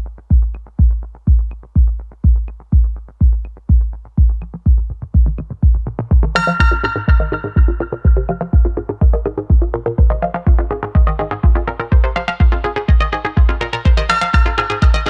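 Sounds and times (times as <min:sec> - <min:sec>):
electronic music with drum-machine kick: 0:00.0 - 0:15.0
bright synth chord: 0:06.4 - 0:09.2.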